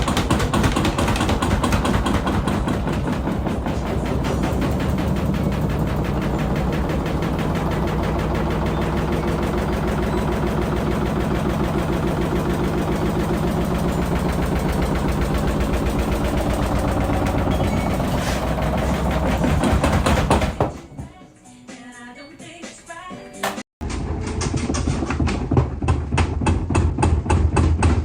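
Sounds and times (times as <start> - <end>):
washing machine spinning: 0.0 - 20.9
cabinet knocking and rattling: 0.0 - 21.1.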